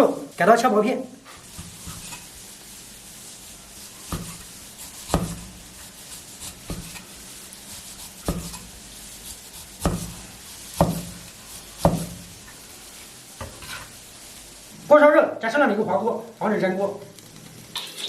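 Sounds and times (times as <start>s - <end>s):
knife slicing meat: 4.1s - 7.1s, 7.7s - 12.3s
knife knocking on chopping board: 11.8s - 12.2s.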